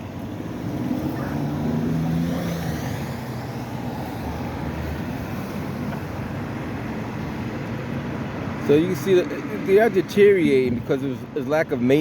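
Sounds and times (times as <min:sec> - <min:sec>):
road noise: 0:00.0 - 0:12.0
car passing close by: 0:00.2 - 0:06.0.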